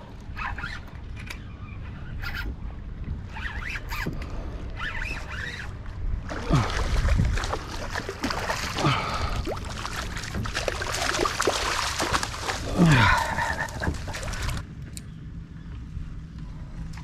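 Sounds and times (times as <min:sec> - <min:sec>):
wind rumble on microphone: 0:00.0 - 0:17.0
short falling squeaks: 0:00.3 - 0:02.6, 0:03.3 - 0:04.2, 0:04.8 - 0:05.8
water lapping against a hull: 0:03.3 - 0:14.6.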